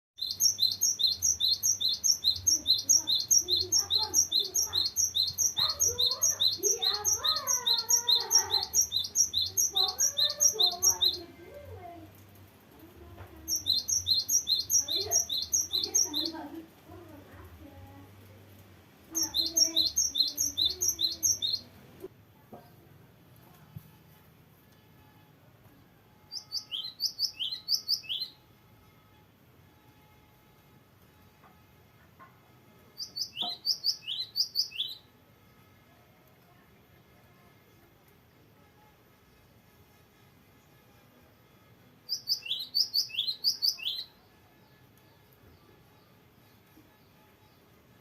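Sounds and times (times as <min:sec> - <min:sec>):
bird singing rolling song: 0:00.2 - 0:11.6, 0:13.4 - 0:16.6, 0:18.1 - 0:21.8, 0:26.3 - 0:28.4, 0:33.0 - 0:35.1, 0:42.1 - 0:44.1.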